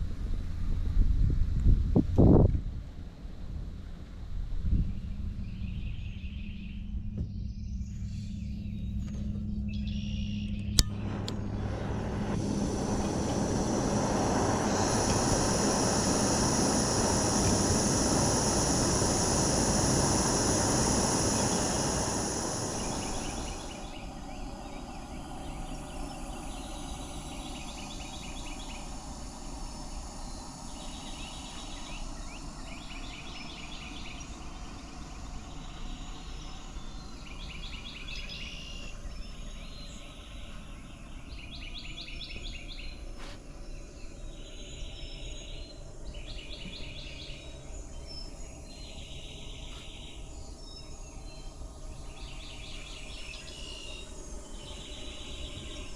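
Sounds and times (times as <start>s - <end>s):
insects pulsing calls: 9.8s - 43.1s, 43.7s - 55.9s
wind rushing: 10.9s - 28.1s
high insect buzz: 11.0s - 38.0s.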